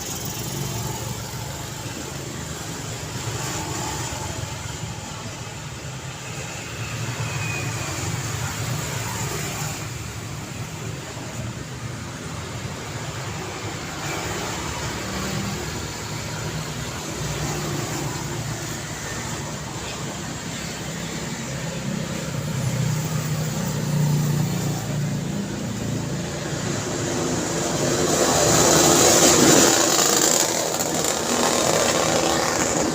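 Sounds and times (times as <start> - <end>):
passing cars rushing: 0.0 - 32.9
tyres hissing on road: 0.0 - 32.9
vehicle passing close: 13.7 - 32.9.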